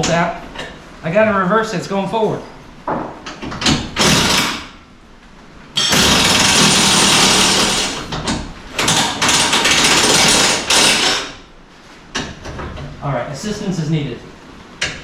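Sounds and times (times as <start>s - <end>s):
impact wrench hammering: 5.8s - 8.0s.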